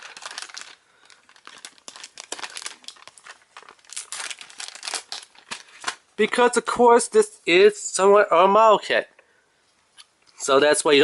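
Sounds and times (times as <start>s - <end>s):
plastic packaging crinkling: 0.0s - 6.4s.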